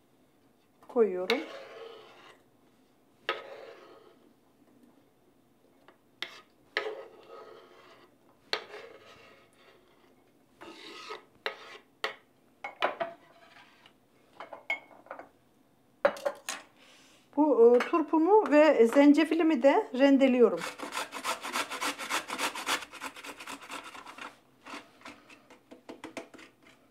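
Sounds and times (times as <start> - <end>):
kitchen utensil scraping and knocking: 1.2 - 2.4, 3.3 - 4.1, 6.2 - 9.9, 10.6 - 15.3, 23.8 - 26.9.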